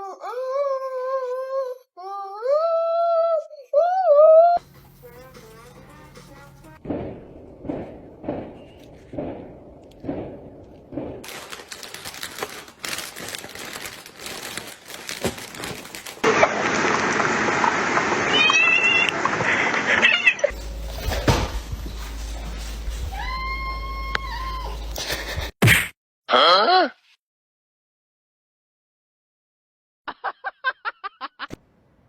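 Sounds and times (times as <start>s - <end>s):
cats meowing: 18.3s - 19.1s.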